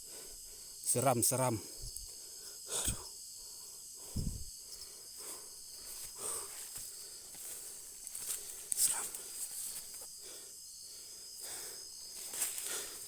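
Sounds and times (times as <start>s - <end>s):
night insects chirring: 0.0s - 13.0s
short low thump: 4.2s - 4.5s.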